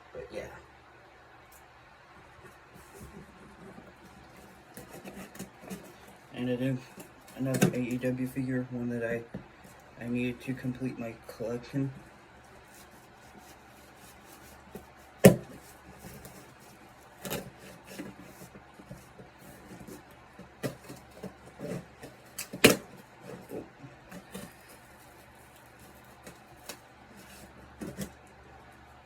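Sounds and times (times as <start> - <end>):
packaging being handled: 2.4 - 8.1, 11.9 - 28.8.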